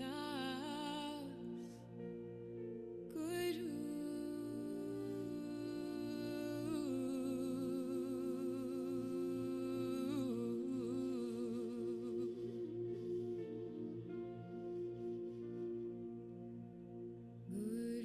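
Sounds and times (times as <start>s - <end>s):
steady held drone: 0.0s - 18.0s
person humming with vibrato: 4.9s - 16.6s.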